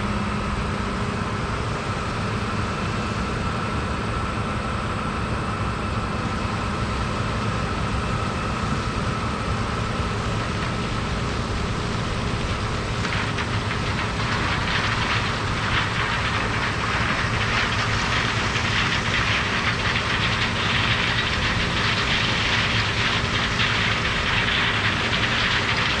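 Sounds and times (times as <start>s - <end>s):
diesel machinery engine rumble: 0.0s - 26.0s
rushing rattling noise: 9.2s - 26.0s.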